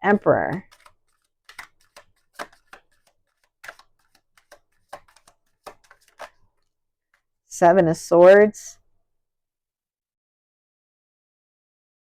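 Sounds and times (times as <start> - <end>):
cards clicking and snapping: 0.6 - 6.6.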